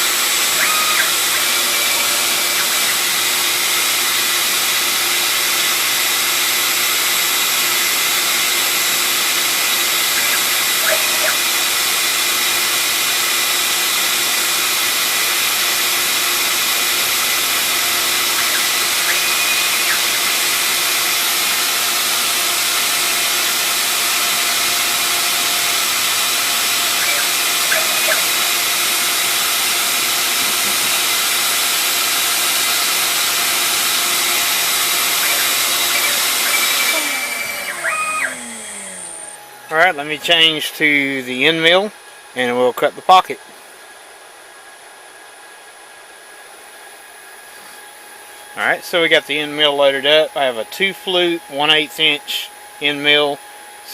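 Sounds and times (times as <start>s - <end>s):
dust vacuum rushing: 0.0s - 39.9s
router spindle whining: 0.0s - 40.5s.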